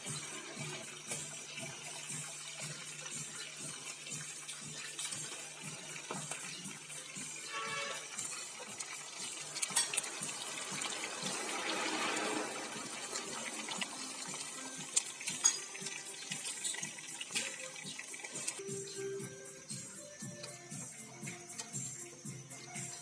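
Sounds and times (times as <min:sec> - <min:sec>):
tap water running into sink: 0:00.0 - 0:18.6
dishes clinking: 0:09.6 - 0:10.1, 0:15.2 - 0:17.8.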